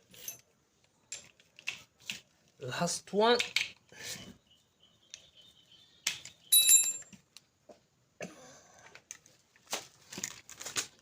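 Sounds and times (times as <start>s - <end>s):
metallic clink ringing: 6.5s - 7.1s.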